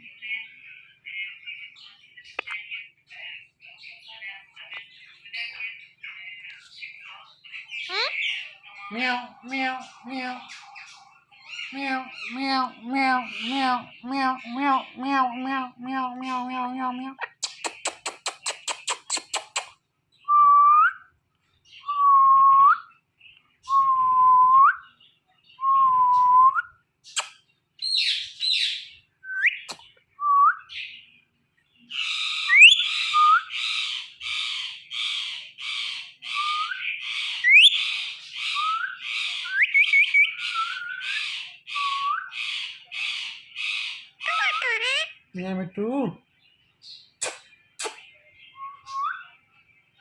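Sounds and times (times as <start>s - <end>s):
parrot scratchy chattering: 17.3s - 19.8s, 44.2s - 45.2s, 47.2s - 48.0s
parrot whistled calls: 32.2s - 33.7s, 36.3s - 36.8s, 37.4s - 42.5s, 44.2s - 45.2s.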